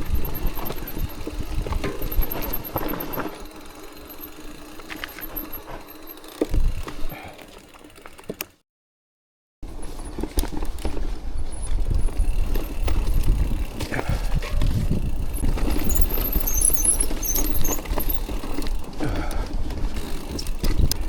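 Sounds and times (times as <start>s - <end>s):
wind buffeting microphone: 0.0s - 2.9s, 11.4s - 16.4s
bike tyres rumbling on dirt: 0.0s - 8.4s, 9.6s - 21.0s
bike frame and chain rattling: 0.0s - 8.5s, 9.7s - 21.0s
short high squeaks: 15.7s - 18.2s.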